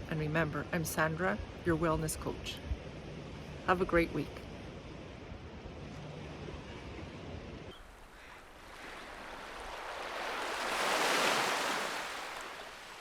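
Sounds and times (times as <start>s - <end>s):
rushing water: 7.9s - 13.0s.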